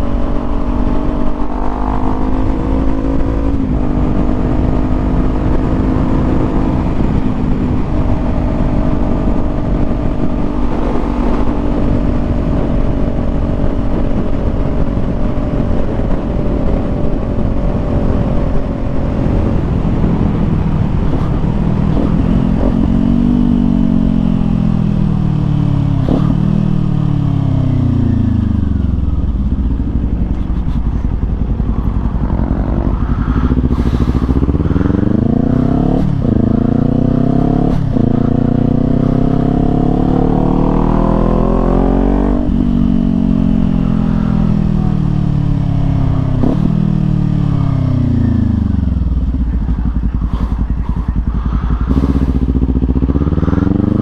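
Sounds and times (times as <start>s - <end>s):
motorcycle engine shifting gears: 0.0s - 54.0s
wind noise: 0.0s - 54.0s.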